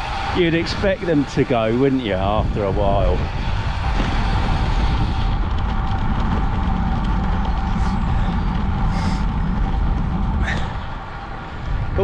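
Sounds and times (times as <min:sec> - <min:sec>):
road noise from bicycle: 0:00.0 - 0:12.0
wind rumble on microphone: 0:00.0 - 0:12.0.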